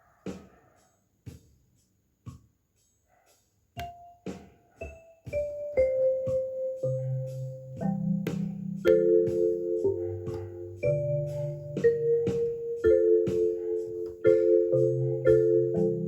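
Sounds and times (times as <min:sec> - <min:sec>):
keyboard music: 0:03.8 - 0:16.0.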